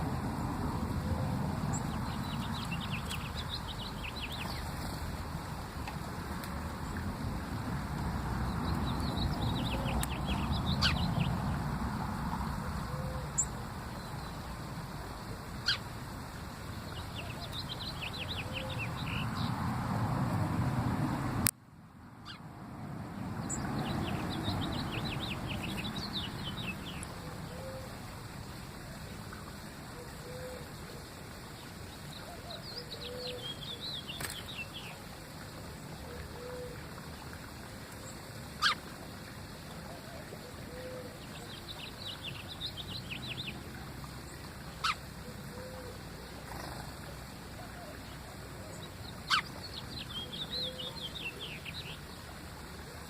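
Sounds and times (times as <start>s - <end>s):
songbird twittering chirps: 1.7s - 5.1s, 8.5s - 11.6s, 13.0s - 19.6s, 23.4s - 27.8s, 31.0s - 35.5s, 40.8s - 45.9s, 46.5s - 53.0s.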